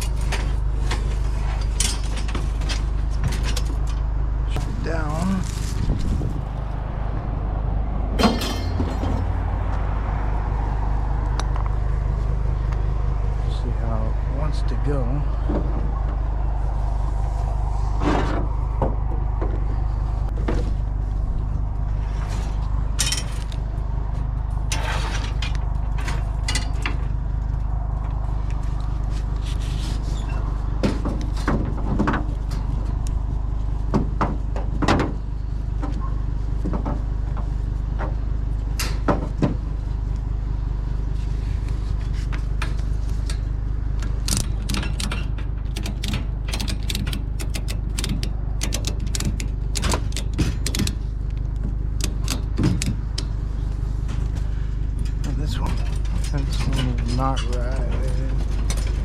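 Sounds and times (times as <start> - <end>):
knocks clicks and scrapes: 0.0 - 4.7, 17.1 - 38.2, 41.2 - 59.0
steady low rumble: 0.0 - 59.0.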